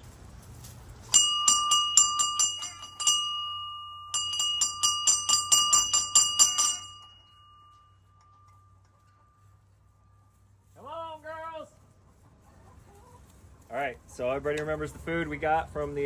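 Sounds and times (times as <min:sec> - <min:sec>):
bell rung rapidly: 0:01.1 - 0:08.9.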